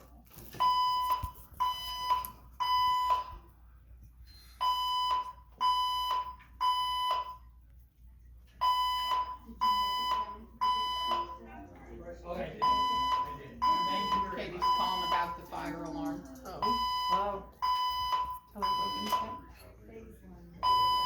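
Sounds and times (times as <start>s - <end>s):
fire alarm beeps: 0.5s - 3.5s, 4.5s - 7.6s, 8.6s - 11.4s, 12.6s - 15.6s, 16.6s - 19.5s, 20.6s - 21.0s.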